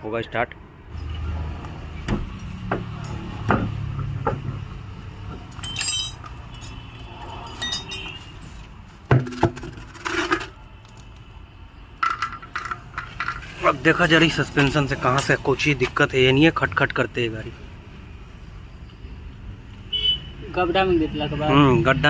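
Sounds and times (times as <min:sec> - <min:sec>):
metallic clinks of tools: 0:05.5 - 0:08.2.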